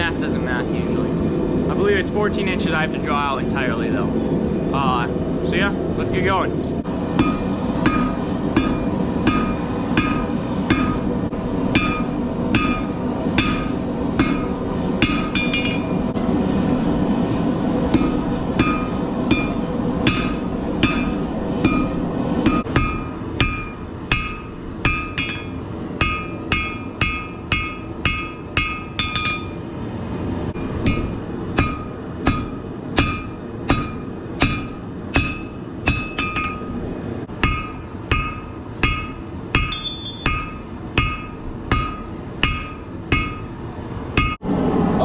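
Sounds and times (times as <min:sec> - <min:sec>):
hammer striking metal on anvil: 0:07.2 - 0:11.0, 0:11.7 - 0:16.0, 0:17.9 - 0:29.6, 0:30.8 - 0:36.6, 0:37.4 - 0:43.5.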